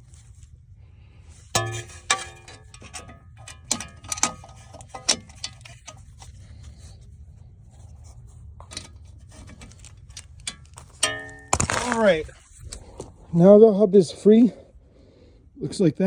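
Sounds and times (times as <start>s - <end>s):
wrench clinking on metal bolts: 1.5s - 5.9s, 9.5s - 12.2s.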